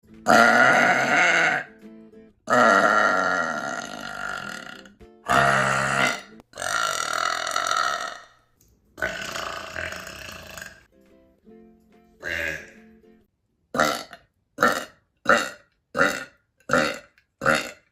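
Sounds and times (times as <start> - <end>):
person burping: 0.2 - 1.7, 2.5 - 8.4, 9.0 - 10.9, 12.2 - 12.8, 13.8 - 17.9
faint music: 9.8 - 13.3.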